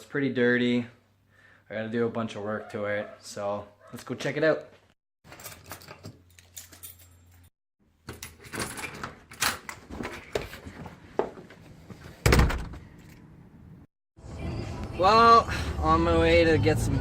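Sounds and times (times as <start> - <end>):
door shutting with thump: 12.2 - 12.8.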